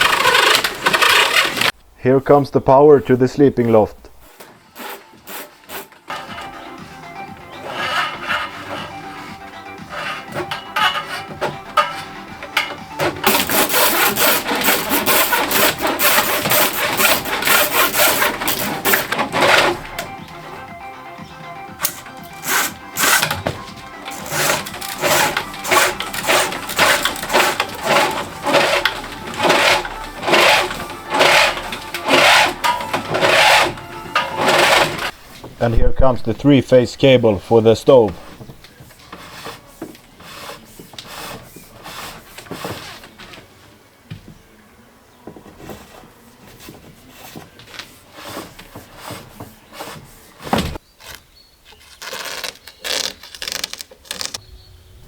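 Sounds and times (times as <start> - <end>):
cable sheath scraping wood: 0.0 - 1.8, 4.3 - 20.8, 21.8 - 36.4, 37.4 - 43.5, 45.5 - 54.4
rubbing and knocking on wood: 7.5 - 20.8, 21.8 - 36.4, 38.0 - 44.4, 45.2 - 51.2.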